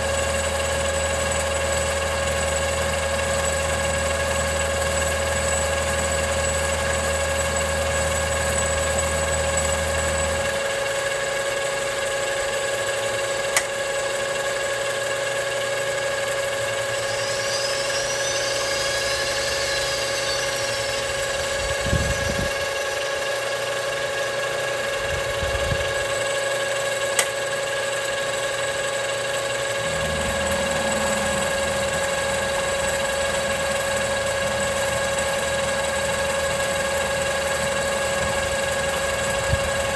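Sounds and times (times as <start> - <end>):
machine whining: 0.0 - 39.9
low hum: 16.3 - 23.2, 28.6 - 39.9
high scraping sound: 16.4 - 23.2, 28.8 - 36.8.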